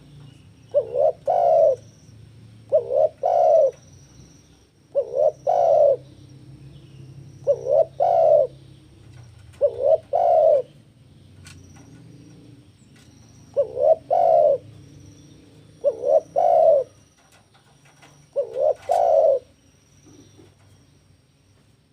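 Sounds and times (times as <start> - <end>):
dove cooing: 0.7 - 1.9, 2.7 - 3.9, 4.9 - 6.2, 7.4 - 10.8, 13.5 - 14.8, 15.7 - 17.0, 18.0 - 19.5.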